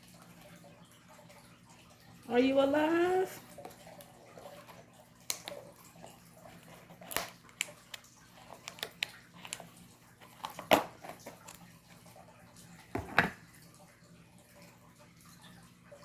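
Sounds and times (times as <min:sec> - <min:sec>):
packaging clicks and taps: 0:07.0 - 0:11.6.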